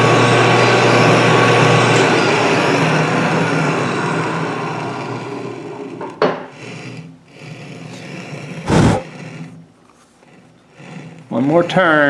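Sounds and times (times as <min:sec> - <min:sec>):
loud thump: 0:08.7 - 0:09.0.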